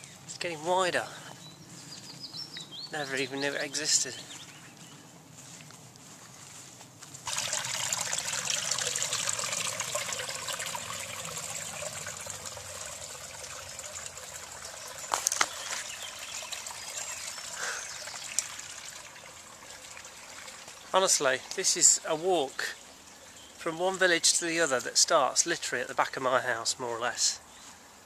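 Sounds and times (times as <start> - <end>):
small stream trickling: 7.2 - 28.0.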